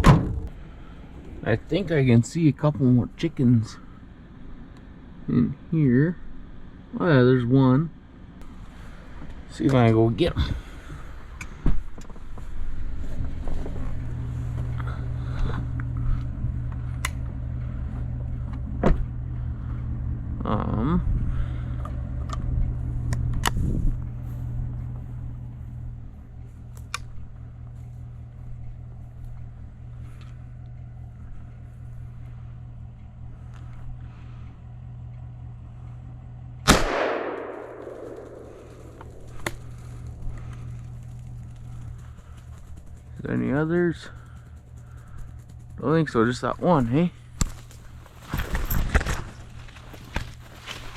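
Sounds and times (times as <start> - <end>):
vehicle engine idling: 0.0 - 50.9
shotgun blast echoing: 36.6 - 39.7.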